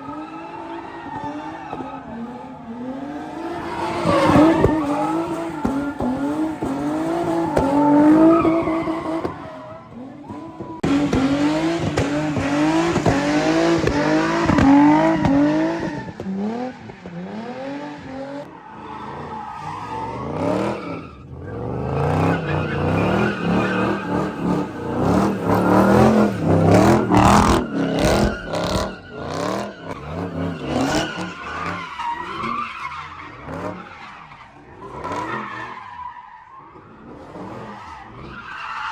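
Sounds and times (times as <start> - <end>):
tyres squealing and skidding: 0.0 - 38.9
car engine revving hard: 10.8 - 18.5, 20.1 - 31.8.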